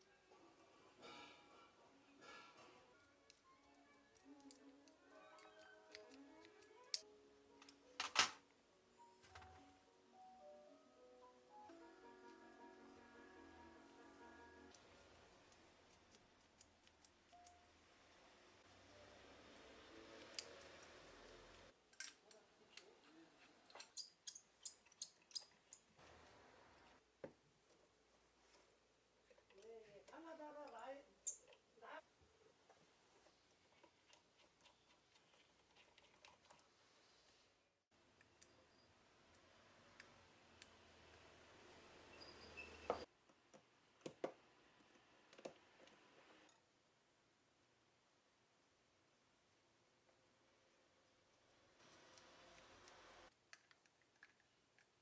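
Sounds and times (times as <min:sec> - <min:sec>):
faint steady hiss: 0:25.5 - 0:55.0.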